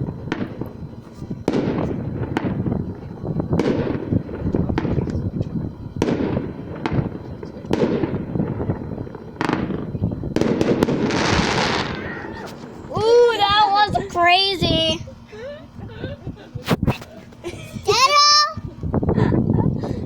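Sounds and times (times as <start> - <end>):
fireworks bangs: 0.0 - 15.0.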